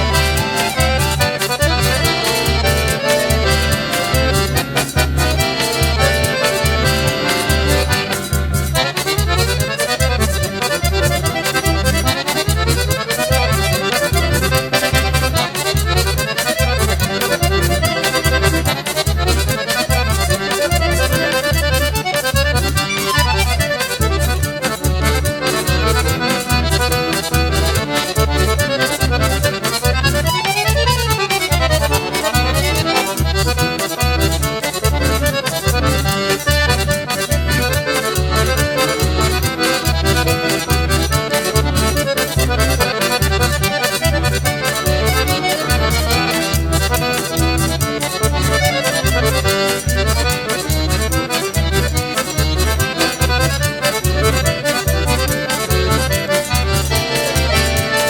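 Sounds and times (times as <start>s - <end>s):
accordion playing fast runs: 0.0s - 58.0s
low beat: 0.0s - 58.0s
quick high ticking: 0.0s - 58.0s.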